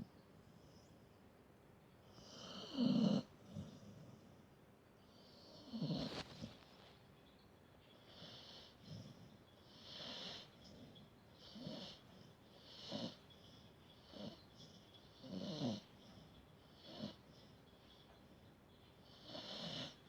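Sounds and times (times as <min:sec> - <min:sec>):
dog snoring: 0:02.0 - 0:04.4, 0:05.1 - 0:06.8, 0:08.0 - 0:17.6, 0:19.0 - 0:20.0.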